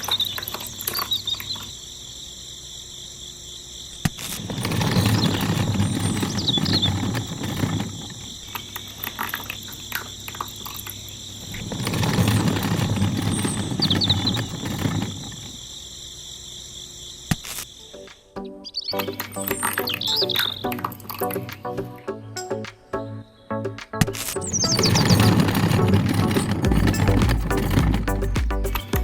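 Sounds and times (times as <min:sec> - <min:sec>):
bird chirps: 0:00.0 - 0:01.8, 0:04.9 - 0:07.6, 0:17.7 - 0:29.0
insects chirring: 0:00.0 - 0:28.9.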